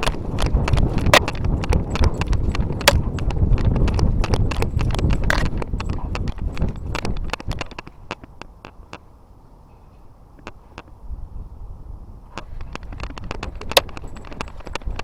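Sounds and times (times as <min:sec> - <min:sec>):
low rustling rumble: 0:00.0 - 0:08.6
clatter of knocks and clicks: 0:00.0 - 0:08.8, 0:12.4 - 0:15.0.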